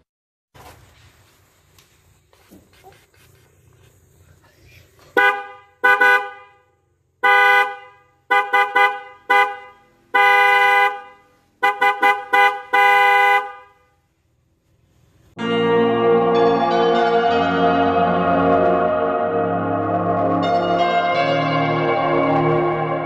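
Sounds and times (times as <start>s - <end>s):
car horn honking: 5.1s - 14.0s.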